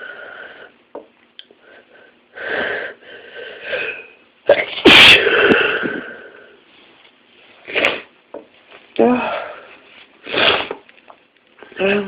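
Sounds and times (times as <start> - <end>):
person sneezing: 3.8 - 6.1, 7.6 - 8.1, 10.2 - 10.8
person catching breaths: 5.0 - 6.6.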